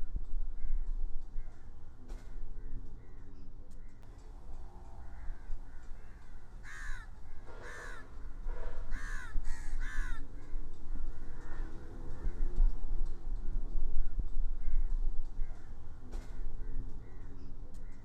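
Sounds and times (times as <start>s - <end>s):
steady low rumble: 4.0s - 18.0s
bird cawing: 4.1s - 12.4s.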